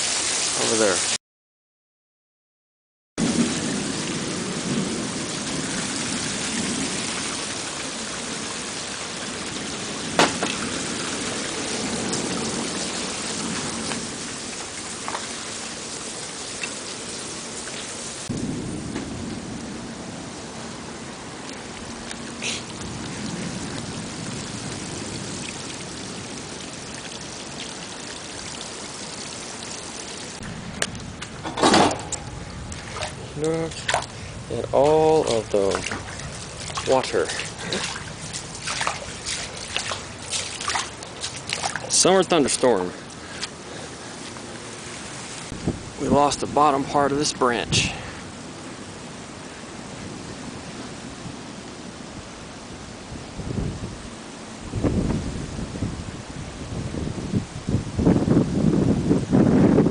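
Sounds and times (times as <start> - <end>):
steady rain hiss: 0.0 - 1.2, 3.2 - 59.9
low rumbling thunder: 3.2 - 15.0, 18.2 - 21.2, 22.8 - 26.9, 30.3 - 34.8, 54.7 - 59.9
drips: 6.0 - 18.2, 21.4 - 45.5.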